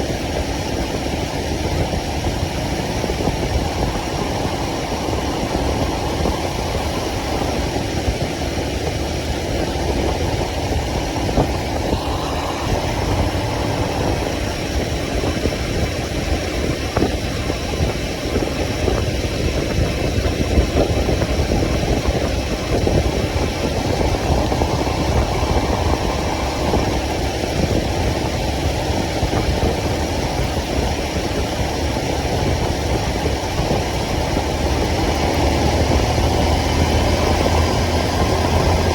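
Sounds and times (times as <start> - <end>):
motorcycle engine running: 0.0 - 38.9.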